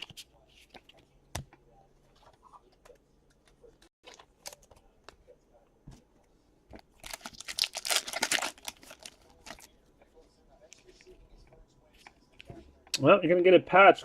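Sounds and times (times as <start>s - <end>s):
card pack wrapper tearing: 7.0s - 9.6s.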